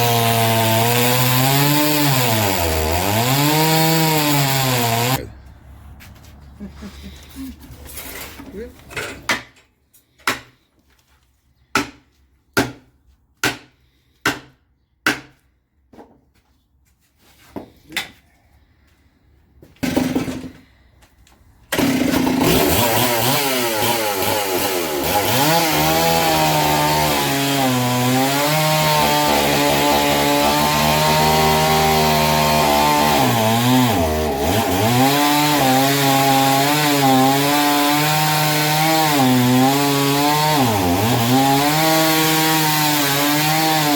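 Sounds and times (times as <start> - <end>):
chainsaw cutting wood: 0.0 - 5.2, 19.8 - 20.6, 21.6 - 43.9.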